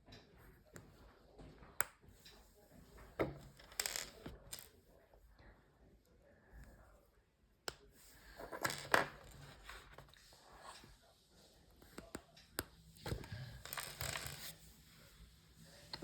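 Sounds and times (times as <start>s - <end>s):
rustling and scraping: 13.0s - 16.0s.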